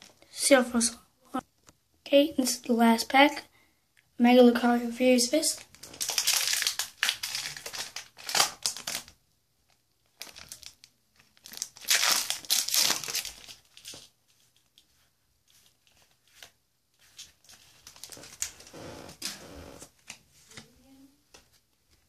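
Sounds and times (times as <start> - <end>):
wrapper crinkling and tearing: 5.6 - 14.9, 15.6 - 19.4.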